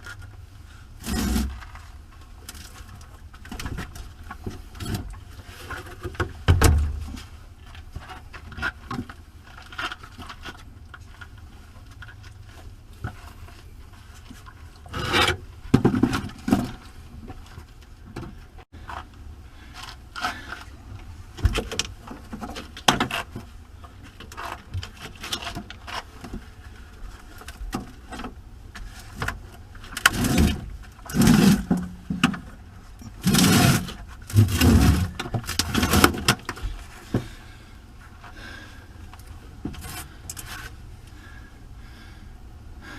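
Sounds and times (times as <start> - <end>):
heavy batteries scraping and clunking: 1.0 - 1.9, 28.8 - 37.4.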